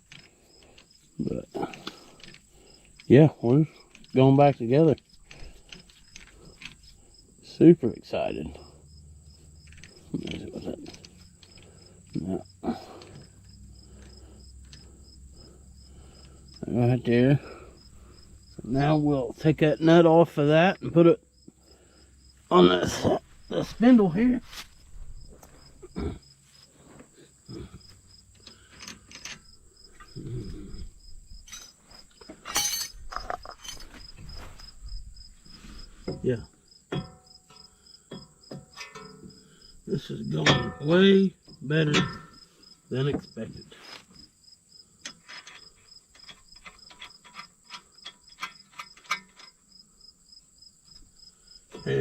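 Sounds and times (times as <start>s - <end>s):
tools clicking and knocking: 0.0s - 3.1s, 3.7s - 7.0s, 9.4s - 15.0s, 28.3s - 30.2s, 31.4s - 34.3s, 36.9s - 39.4s, 40.4s - 40.9s, 41.5s - 42.5s, 45.0s - 49.7s
crickets chirping: 0.0s - 52.0s.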